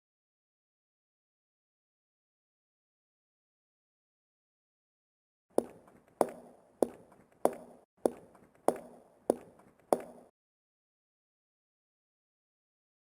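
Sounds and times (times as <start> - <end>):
sharp knocks on hard surface: 5.6 - 10.3.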